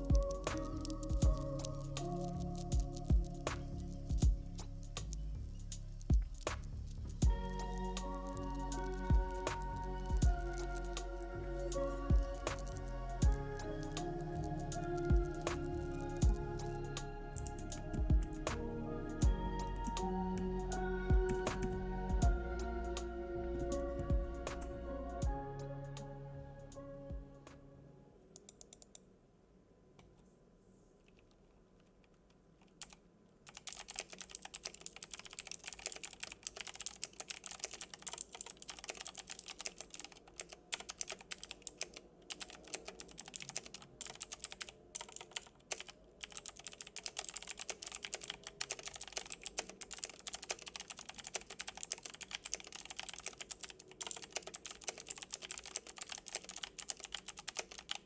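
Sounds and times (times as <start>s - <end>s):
clicky mechanical keyboard typing: 12.0s - 14.0s, 32.6s - 58.0s.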